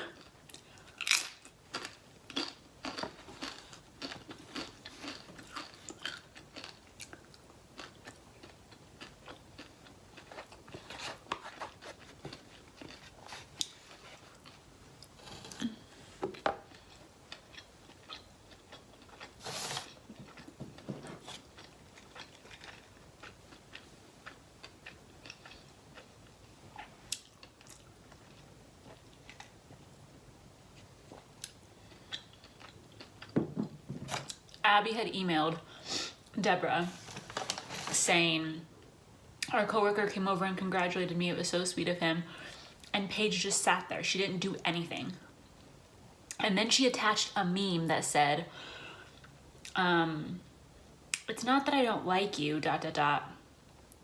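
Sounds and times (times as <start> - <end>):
close-up chewing and crunching: 0.0 - 29.9, 30.7 - 33.4.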